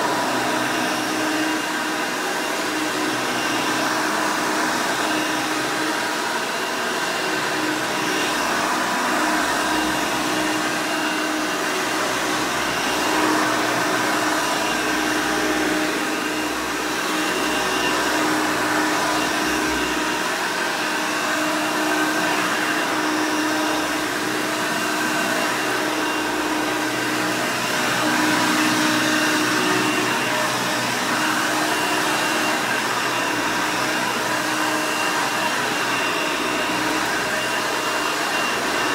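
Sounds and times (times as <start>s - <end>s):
upright vacuum cleaner running: 0.0s - 38.9s.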